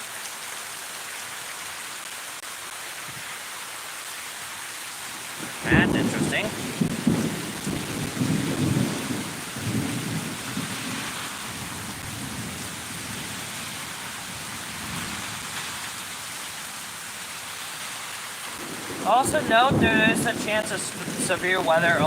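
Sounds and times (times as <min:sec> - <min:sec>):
steady rain: 0:00.0 - 0:22.0
thunder rumbling: 0:05.4 - 0:15.6, 0:18.6 - 0:22.0.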